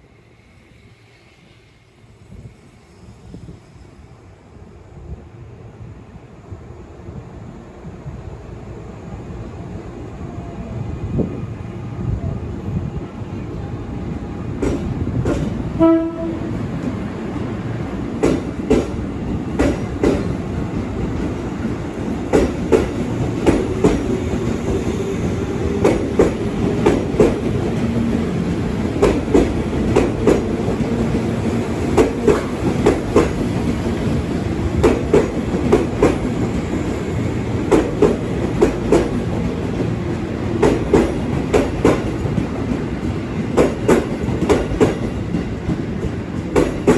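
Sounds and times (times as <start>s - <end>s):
train low rumble: 0.0s - 46.9s
train wheels clickety-clack: 14.5s - 46.9s
train horn blast: 15.8s - 16.8s.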